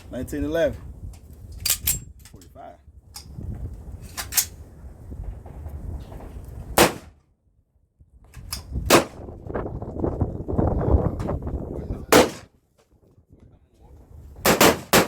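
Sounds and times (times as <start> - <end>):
pistol shots: 6.8 - 7.2, 8.9 - 9.2, 12.1 - 12.5, 14.4 - 15.0.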